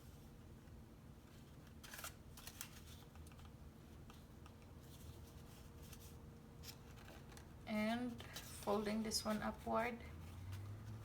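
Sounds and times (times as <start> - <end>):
paper petals clicking and rustling: 1.7 - 9.4.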